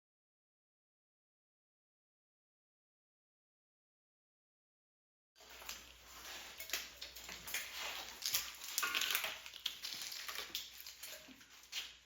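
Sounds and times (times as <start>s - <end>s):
plastic clicks and crackles: 6.6s - 11.9s.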